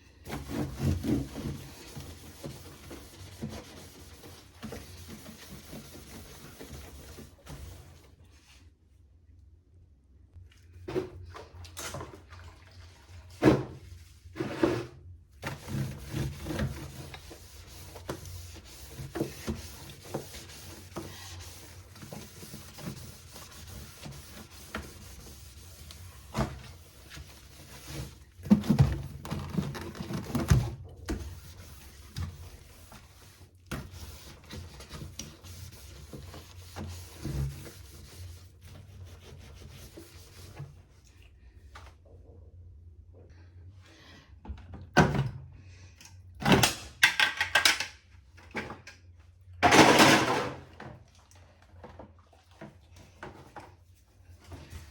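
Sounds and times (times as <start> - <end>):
fridge shelves and containers clattering: 49.6 - 51.0.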